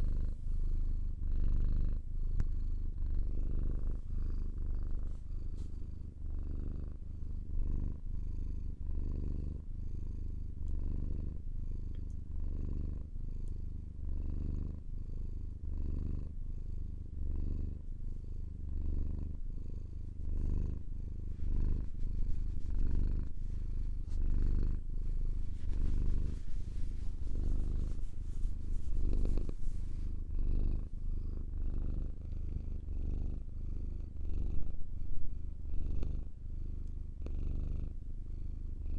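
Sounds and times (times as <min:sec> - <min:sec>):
cat purring: 0:00.0 - 0:38.9
rustling hiss: 0:21.4 - 0:30.4.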